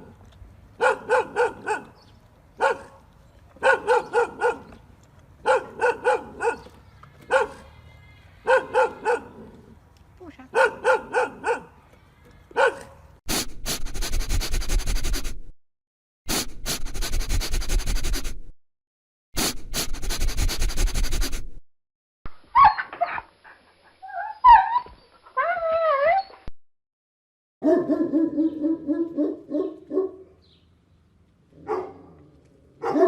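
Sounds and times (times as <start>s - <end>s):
dog barking: 0.8s - 2.0s, 2.6s - 3.0s, 3.6s - 4.8s, 5.4s - 6.7s, 7.3s - 7.7s, 8.4s - 9.5s, 10.5s - 11.8s, 12.6s - 13.1s, 27.6s - 30.4s, 31.6s - 32.2s, 32.8s - 33.0s
dog making rough noisy sounds: 13.3s - 15.5s, 16.3s - 18.4s, 19.4s - 21.6s
dog whimpering and whining: 24.0s - 26.5s.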